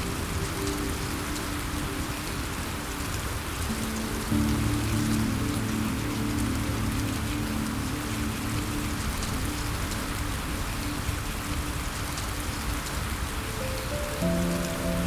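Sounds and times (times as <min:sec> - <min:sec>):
soft sustained music notes: 0:00.0 - 0:15.0
steady rain falling: 0:00.0 - 0:15.0.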